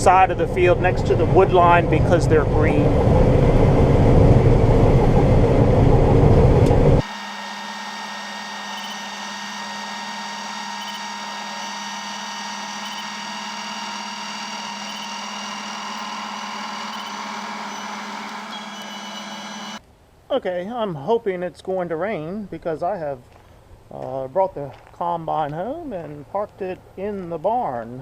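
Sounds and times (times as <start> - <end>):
mechanical hum with high whine: 0.0 - 19.8
combine harvester running: 2.3 - 19.8.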